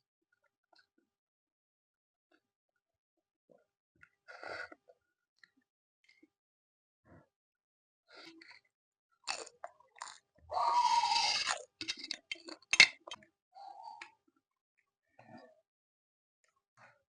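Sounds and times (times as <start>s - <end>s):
wet chewing: 9.3s - 13.2s
loud slurp: 10.7s - 11.7s.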